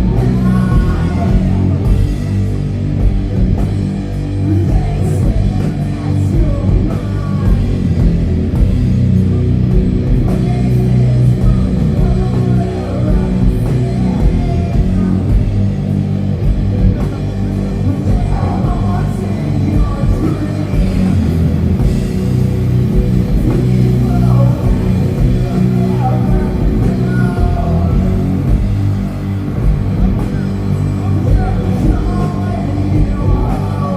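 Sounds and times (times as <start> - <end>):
doom metal band playing: 0.0 - 33.9.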